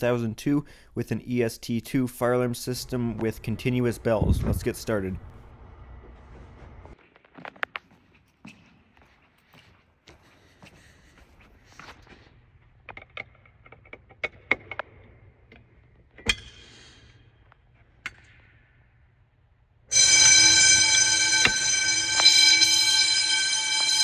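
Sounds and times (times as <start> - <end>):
fire alarm bells ringing: 19.9 - 24.0.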